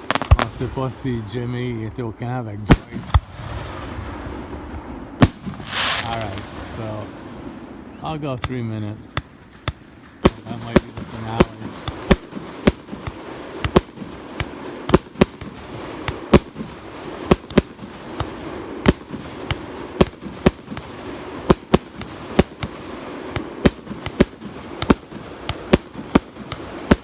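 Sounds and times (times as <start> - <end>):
fireworks bangs: 0.0 - 27.0.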